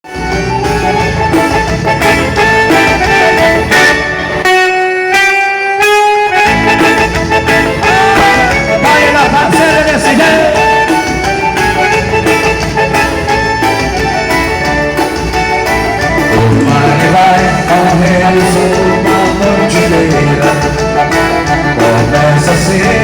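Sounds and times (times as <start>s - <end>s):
held melody notes: 0.1s - 23.0s
steady bass beat: 16.0s - 23.0s.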